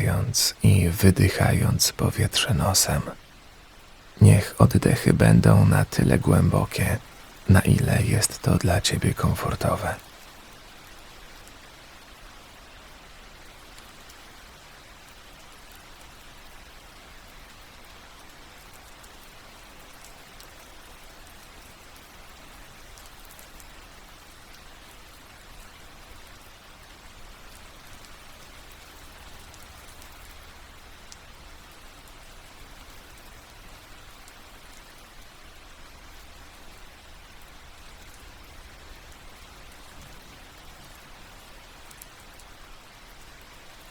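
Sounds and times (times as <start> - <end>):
steady rain falling: 0.0 - 43.9
raindrops pattering on a surface: 10.0 - 43.9.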